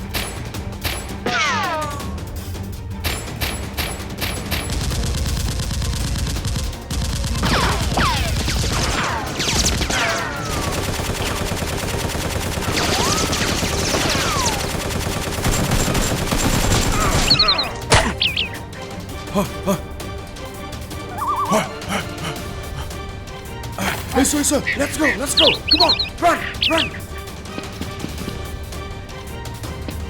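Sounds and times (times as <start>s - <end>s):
rapid automatic gunfire: 4.3s - 17.6s
falling whistling sounds: 17.0s - 18.7s, 25.0s - 27.1s.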